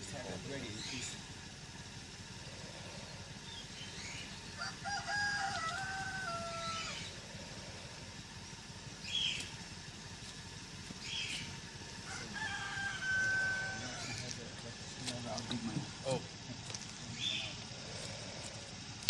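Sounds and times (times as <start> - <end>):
rooster crowing: 4.4 - 7.2, 12.0 - 14.3.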